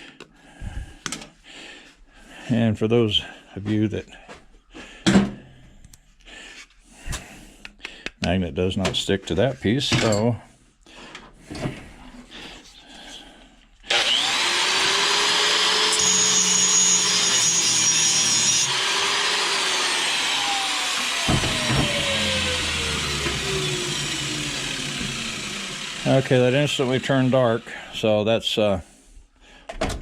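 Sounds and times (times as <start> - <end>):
power tool working metal: 13.9 - 28.1.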